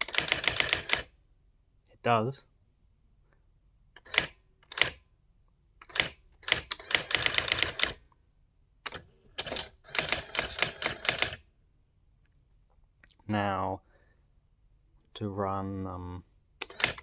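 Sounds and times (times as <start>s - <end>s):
typewriter print mechanism striking: 0.0s - 1.1s, 9.4s - 11.4s.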